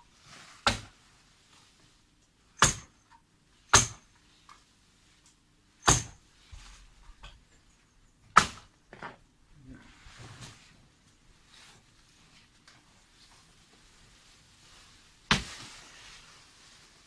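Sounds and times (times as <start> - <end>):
sharp hand tool strikes: 2.6 - 3.0, 3.7 - 4.1, 5.8 - 6.2, 8.4 - 8.7.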